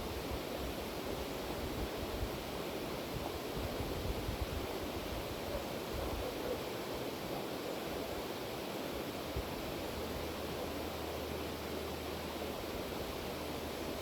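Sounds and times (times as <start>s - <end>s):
river water flowing: 7.4s - 14.0s.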